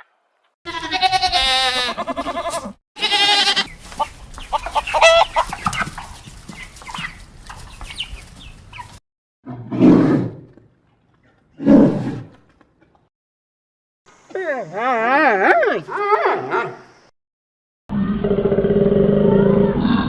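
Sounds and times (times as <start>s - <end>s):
chickens clucking: 3.5s - 9.0s.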